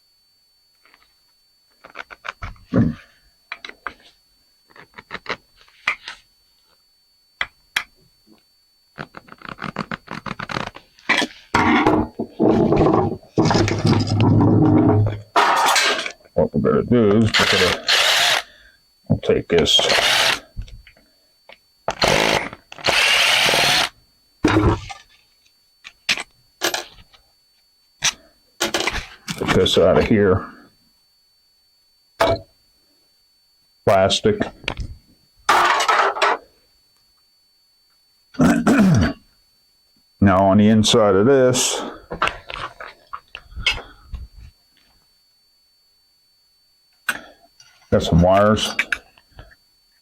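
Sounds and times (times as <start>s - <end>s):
power drill whirring: 17.3s - 18.5s, 19.8s - 20.4s, 21.9s - 24.0s.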